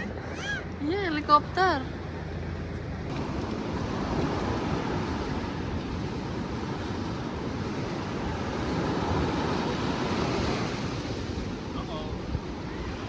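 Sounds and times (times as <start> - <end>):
wind blowing across microphone: 3.0 - 13.0
ocean surf washing onto beach: 3.1 - 13.0.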